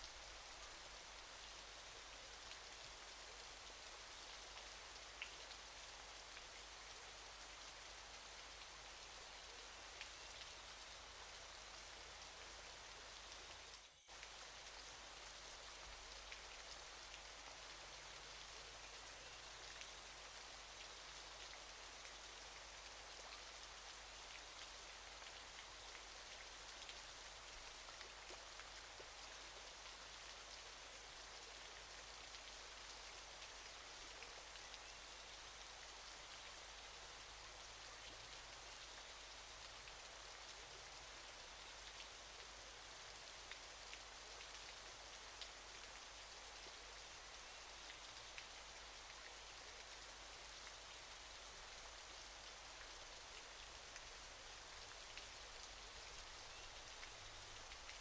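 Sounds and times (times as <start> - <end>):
faint waterfall hiss: 0.0 - 58.0.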